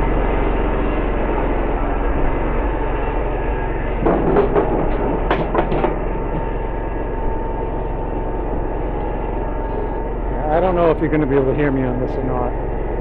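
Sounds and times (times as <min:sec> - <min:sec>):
riding mower engine running: 0:00.0 - 0:13.0
sharp knocks and clatters: 0:04.0 - 0:06.6.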